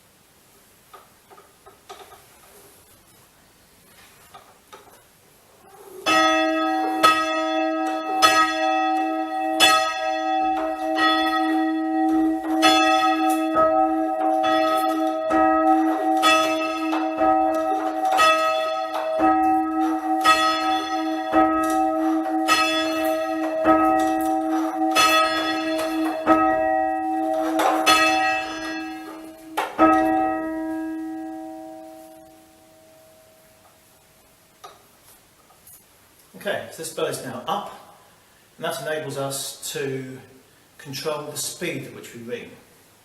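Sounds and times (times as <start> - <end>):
church bell ringing: 6.1 - 34.0.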